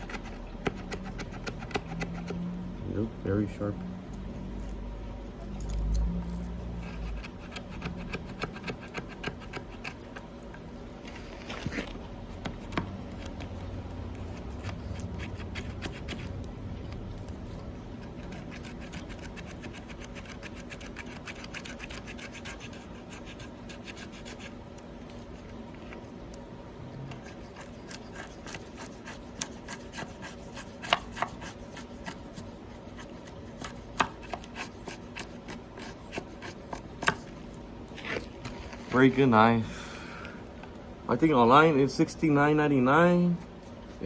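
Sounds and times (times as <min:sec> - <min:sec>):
knife scraping wood: 0:00.0 - 0:02.4, 0:06.3 - 0:26.0, 0:27.0 - 0:39.2.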